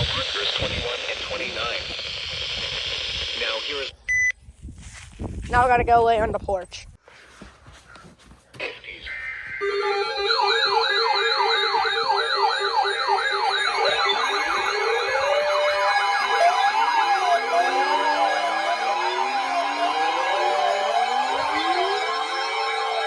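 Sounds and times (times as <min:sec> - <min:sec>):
fast yelp siren: 0:09.1 - 0:23.0
hi-lo siren tone: 0:09.1 - 0:23.0
slow wailing siren tone: 0:09.3 - 0:23.0.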